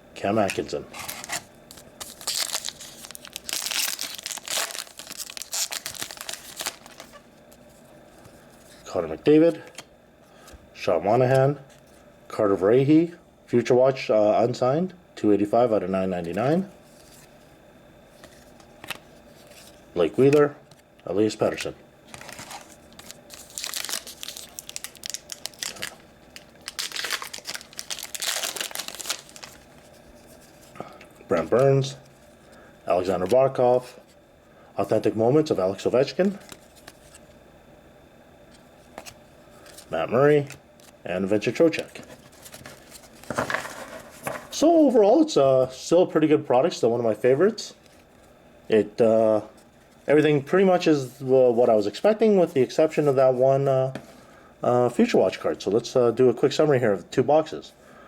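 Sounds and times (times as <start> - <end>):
foil wrapper crinkling and tearing: 0.4 - 7.2, 22.1 - 29.9.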